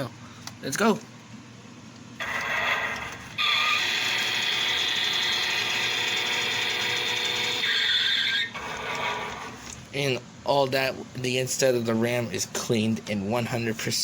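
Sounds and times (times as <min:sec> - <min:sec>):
toy truck motor whirring: 0:02.2 - 0:09.8.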